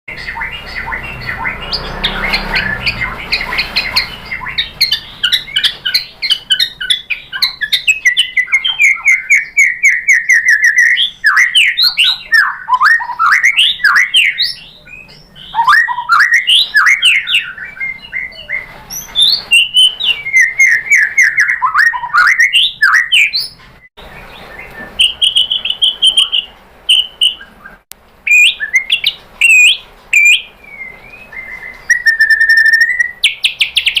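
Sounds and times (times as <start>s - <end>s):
rough noisy sound: 0.1s - 6.2s
songbird singing varied song: 0.1s - 34.0s.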